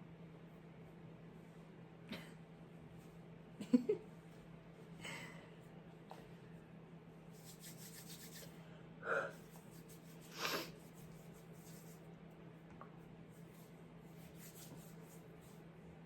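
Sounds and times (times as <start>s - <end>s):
person breathing: 5.0s - 5.6s, 8.6s - 9.4s, 10.3s - 10.7s.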